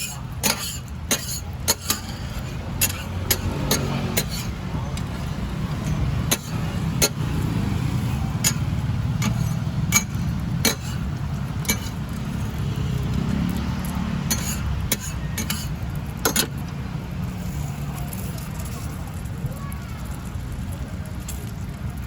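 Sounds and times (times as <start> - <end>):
metal utensils clinking on pans: 0.0 - 16.8.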